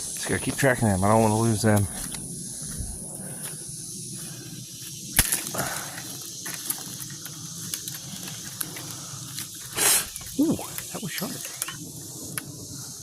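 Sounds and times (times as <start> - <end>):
high insect hiss: 0.0 - 13.0
sharp twig snap: 5.1 - 5.6.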